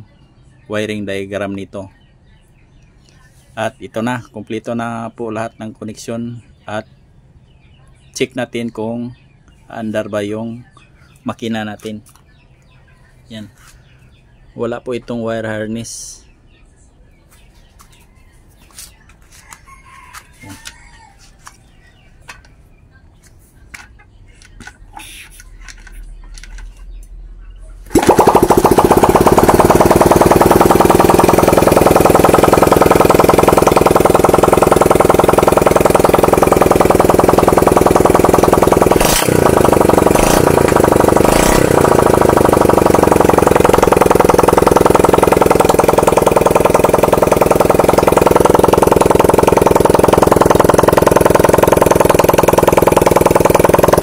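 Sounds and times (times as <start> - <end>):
motorcycle engine running: 27.8 - 54.0.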